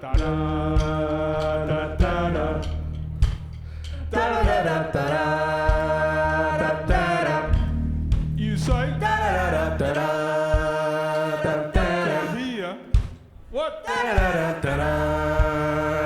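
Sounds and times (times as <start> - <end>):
sustained bass note: 0.4 - 10.3
sliding melody notes: 2.4 - 10.3
kick drum thumping: 6.9 - 9.5.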